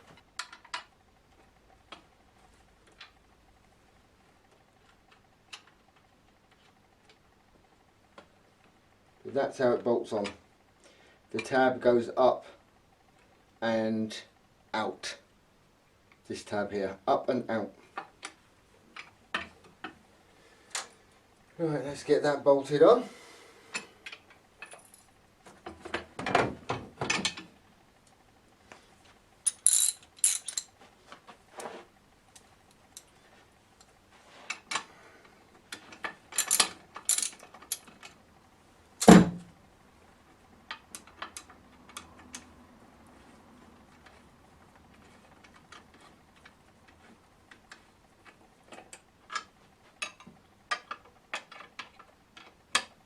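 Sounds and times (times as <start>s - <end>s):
metal parts clinking: 29.4s - 30.7s, 36.3s - 37.9s.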